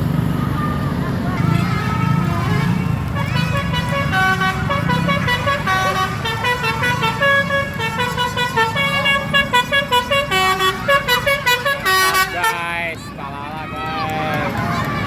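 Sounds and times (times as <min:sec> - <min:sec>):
low vehicle rumble: 0:00.0 - 0:15.0
bus air horn playing a tune: 0:01.5 - 0:12.9.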